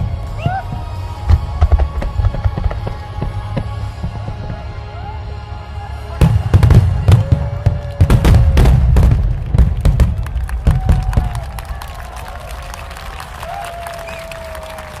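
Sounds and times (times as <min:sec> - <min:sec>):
fireworks bangs and crackles: 0:00.0 - 0:04.8, 0:06.2 - 0:14.7
background music: 0:00.0 - 0:15.0.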